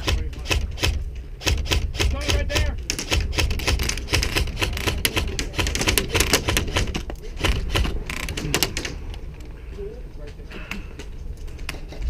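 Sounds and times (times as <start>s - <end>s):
airsoft guns firing: 0.0s - 8.0s.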